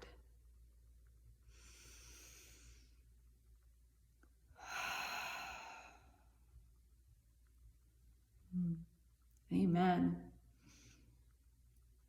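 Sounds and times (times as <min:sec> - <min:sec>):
woman breathing: 0:01.4 - 0:03.2, 0:04.5 - 0:06.5, 0:10.5 - 0:11.3.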